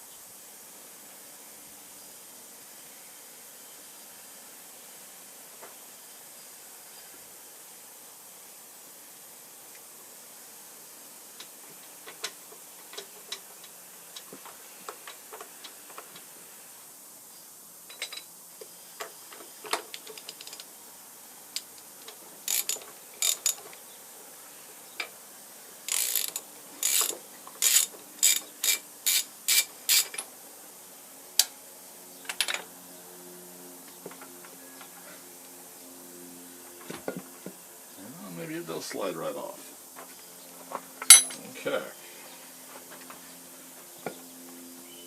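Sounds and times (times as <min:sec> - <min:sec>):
hand tools clicking on metal: 0:22.5 - 0:23.7, 0:25.9 - 0:30.3, 0:41.0 - 0:41.4.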